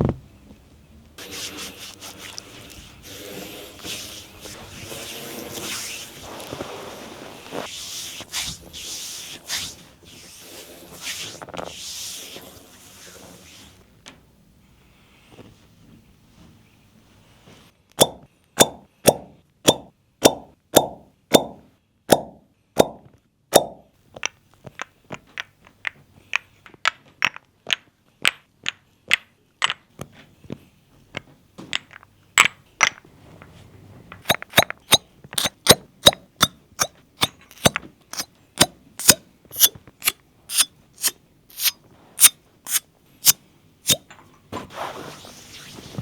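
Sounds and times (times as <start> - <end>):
rustling noise: 1.2 - 13.9, 44.6 - 46.0
cupping cups suction pops: 18.0 - 23.0, 34.2 - 44.0.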